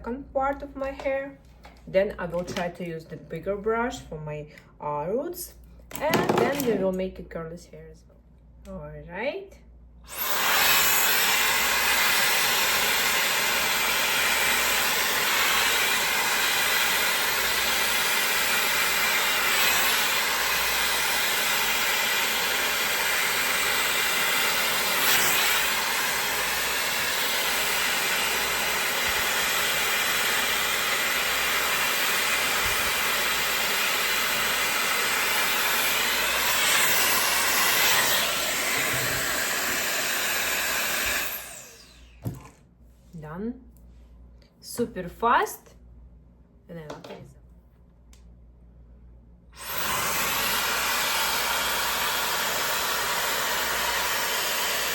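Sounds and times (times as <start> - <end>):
hair dryer brush running: 10.1 - 42.6, 49.6 - 54.9.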